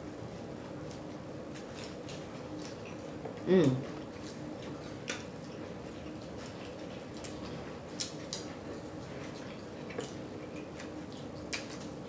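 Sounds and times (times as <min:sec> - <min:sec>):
faint steady hum: 0:00.0 - 0:12.0
person chewing with lip smacks: 0:00.8 - 0:12.0.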